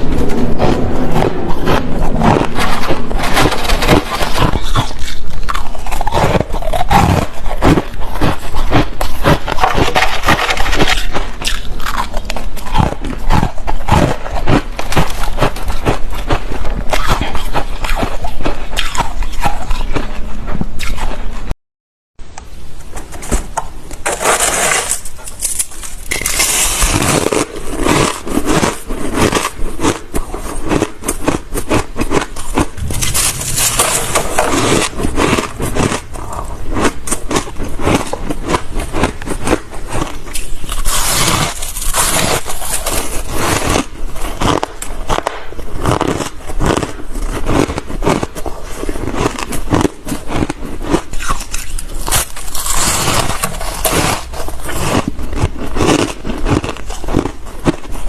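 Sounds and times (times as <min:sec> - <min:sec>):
teeth crunching ice: 0:00.0 - 0:21.1, 0:25.2 - 0:58.0.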